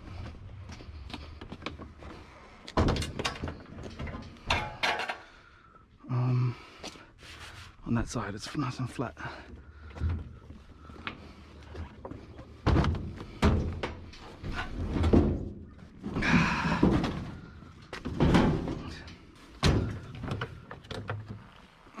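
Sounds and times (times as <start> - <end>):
heavy metal thuds and clunks: 2.6 - 5.3, 11.8 - 21.3.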